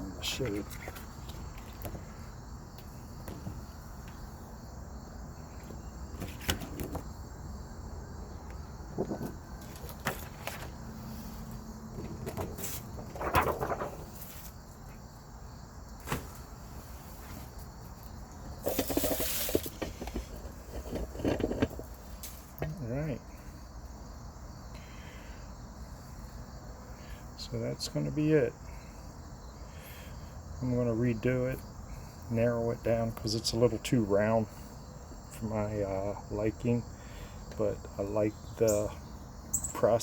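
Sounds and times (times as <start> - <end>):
crickets chirring: 0.0 - 40.0
clicks and rustles of handling: 12.0 - 14.4, 18.6 - 22.8.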